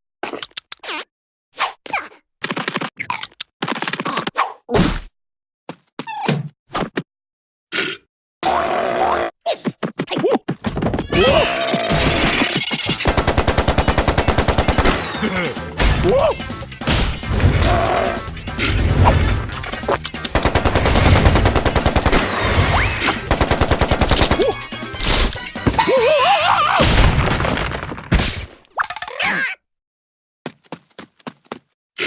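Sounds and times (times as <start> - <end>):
cartoon machine-gun rattle: 12.2 - 15.2, 20.3 - 24.6.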